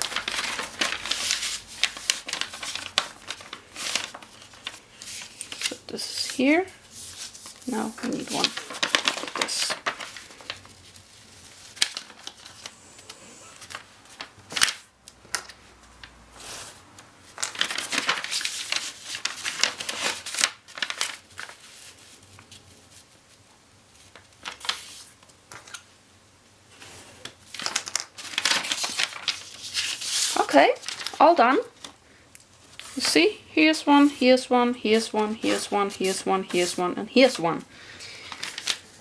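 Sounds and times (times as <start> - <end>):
paper being folded and creased: 0.0 - 23.1, 24.0 - 25.8, 27.2 - 32.0, 32.6 - 37.4, 38.2 - 39.0.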